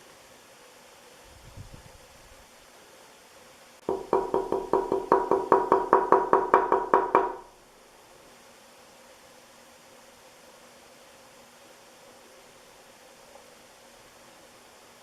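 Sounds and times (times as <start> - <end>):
knocks on wooden fan blade: 3.9 - 7.5.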